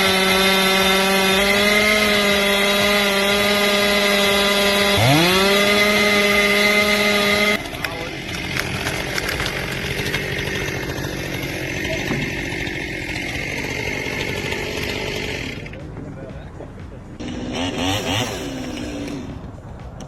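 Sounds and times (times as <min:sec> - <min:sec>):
chainsaw at full throttle: 0:00.0 - 0:15.8, 0:17.2 - 0:19.6
steady rough noise: 0:00.0 - 0:20.0
sharp cracks and clicks: 0:07.6 - 0:10.9.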